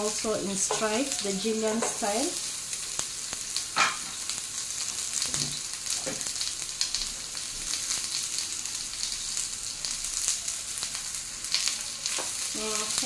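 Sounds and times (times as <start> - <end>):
onions sizzling in hot oil: 0.0 - 13.0.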